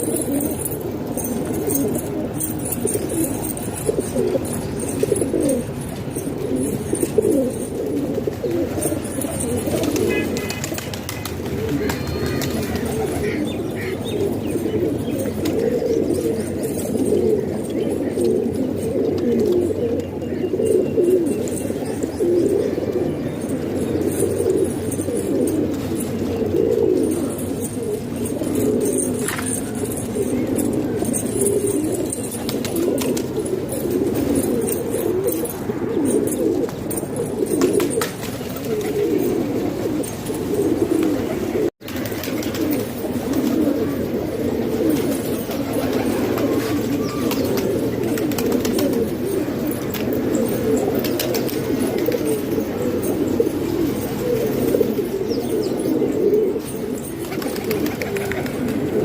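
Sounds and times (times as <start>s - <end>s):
pigeons cooing: 0.0s - 59.0s.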